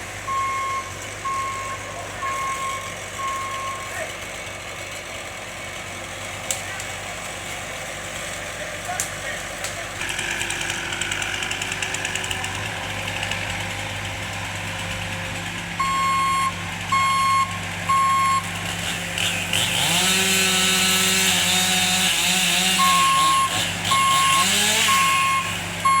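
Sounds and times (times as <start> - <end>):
heavy truck engine running: 0.0 - 26.0
back-up alarm beeping: 0.3 - 3.9, 15.8 - 18.5, 22.8 - 26.0.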